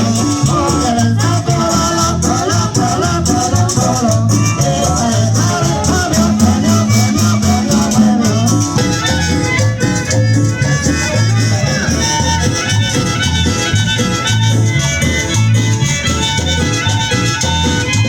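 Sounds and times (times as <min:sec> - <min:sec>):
latin dance music: 0:00.0 - 0:18.0
shaker keeping time: 0:00.0 - 0:18.0
steady bass beat: 0:00.0 - 0:18.0.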